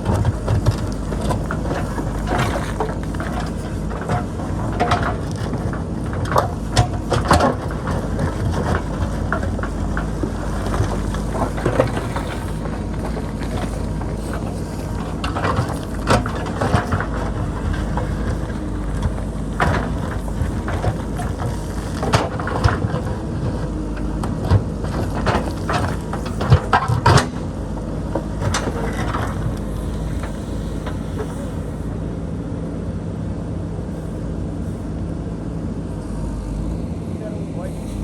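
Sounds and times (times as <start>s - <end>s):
steel bucket clanking against rock: 0.0s - 30.2s
diesel engine running under load: 0.0s - 38.0s.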